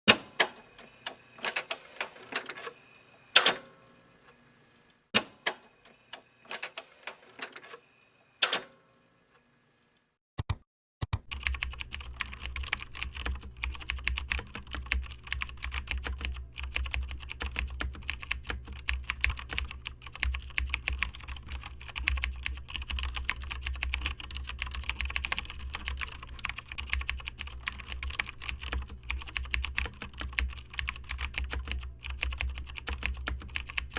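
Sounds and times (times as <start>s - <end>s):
keyboard keys clicking: 11.2s - 33.9s.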